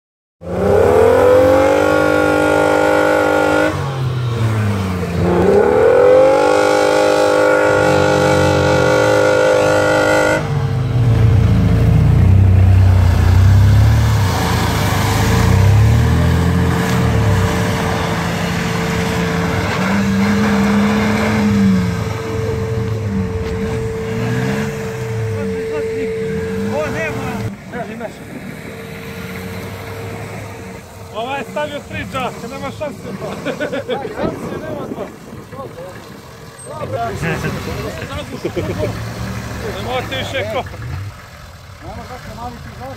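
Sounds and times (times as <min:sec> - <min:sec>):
off-road engine revving: 0:00.4 - 0:42.9
steady whine: 0:10.8 - 0:35.8.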